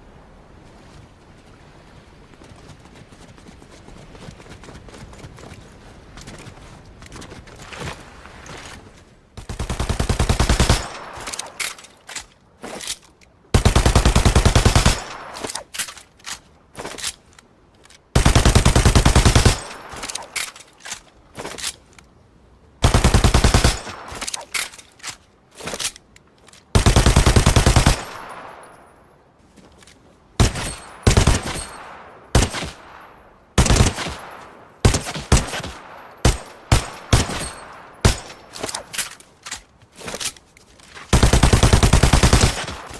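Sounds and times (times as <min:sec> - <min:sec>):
machine pistol automatic bursts: 0:41.1 - 0:42.9.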